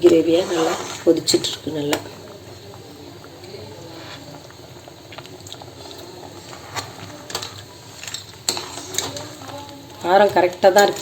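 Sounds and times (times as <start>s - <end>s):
curry bubbling in a pot: 0.0s - 11.0s.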